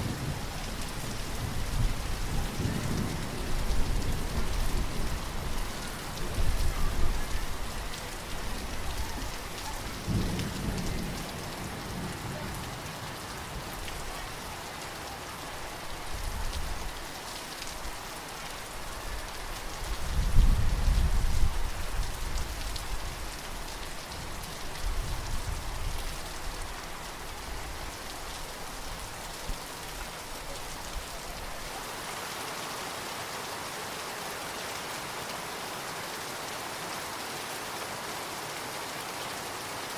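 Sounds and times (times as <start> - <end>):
distant thunder rumbling: 0.0 - 13.8
steady rain falling: 0.0 - 39.9.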